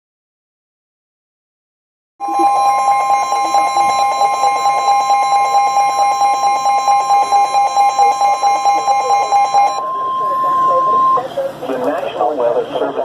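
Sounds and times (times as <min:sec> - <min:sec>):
two-tone alarm signal: 0:02.2 - 0:11.4.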